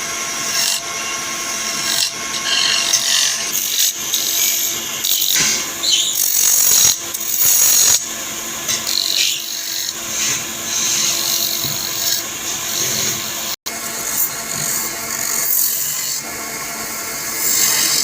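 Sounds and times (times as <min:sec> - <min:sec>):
tool scraping spinning wood: 0:00.0 - 0:18.0
wood lathe motor hum: 0:00.0 - 0:18.0.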